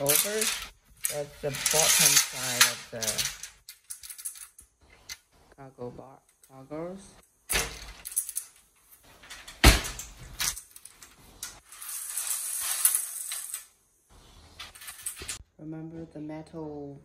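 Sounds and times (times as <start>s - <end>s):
basket scraping: 0.0s - 3.5s.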